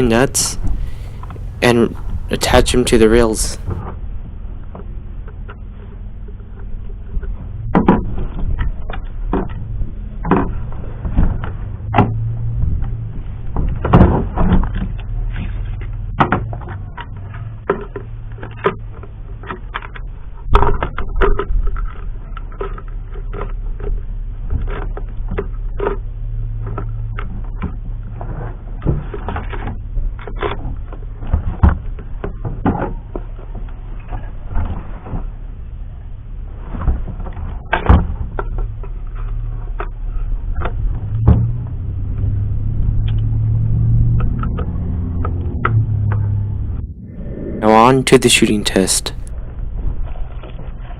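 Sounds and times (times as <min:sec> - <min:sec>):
steady low hum: 0:00.0 - 0:04.5, 0:45.2 - 0:50.9.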